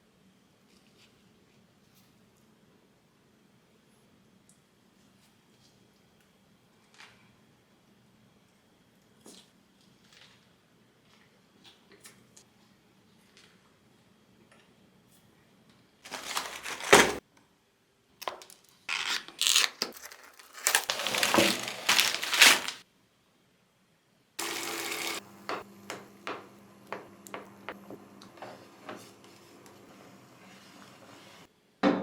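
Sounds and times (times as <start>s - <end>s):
rustling and scraping: 16.1s - 17.2s, 19.9s - 22.8s.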